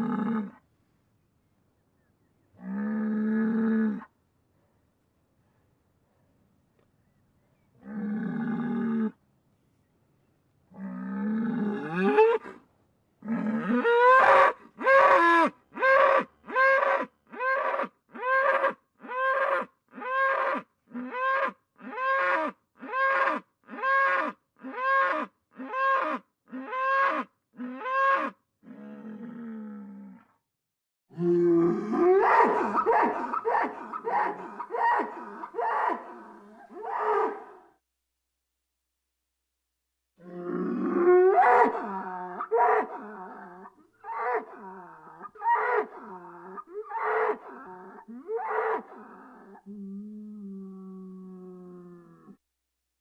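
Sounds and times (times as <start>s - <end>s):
bull bellowing: 31.1s - 37.6s.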